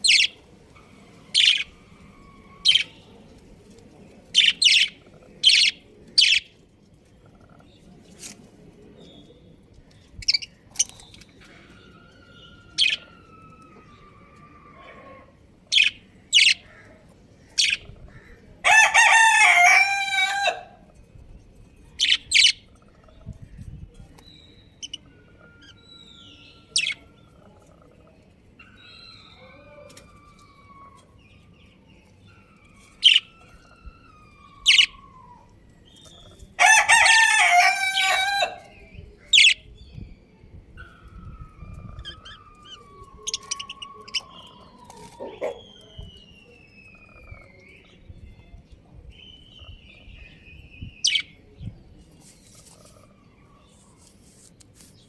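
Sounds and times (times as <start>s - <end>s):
budgerigars chirping: 0.0s - 0.4s, 1.3s - 1.8s, 2.6s - 3.0s, 4.4s - 6.5s, 12.8s - 13.0s, 15.7s - 16.7s, 22.0s - 22.7s, 26.8s - 27.0s, 32.9s - 33.5s, 34.7s - 35.1s, 39.3s - 39.6s, 41.9s - 46.1s, 51.0s - 51.4s
long loud bird calls: 0.0s - 3.1s, 32.3s - 35.4s.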